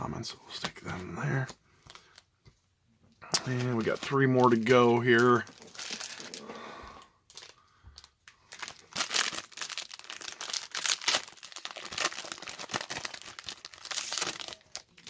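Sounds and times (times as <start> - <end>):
foil wrapper tearing and crinkling: 3.3 - 6.5, 7.3 - 15.0.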